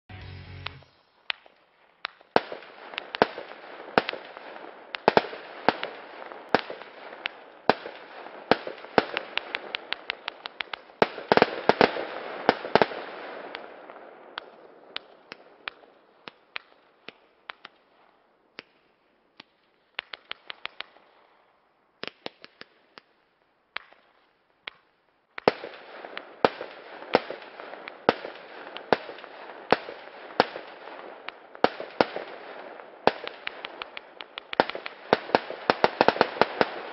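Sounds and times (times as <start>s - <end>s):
crackling hiss of fireworks: 0.1s - 36.9s
firework bangs: 25.4s - 36.9s.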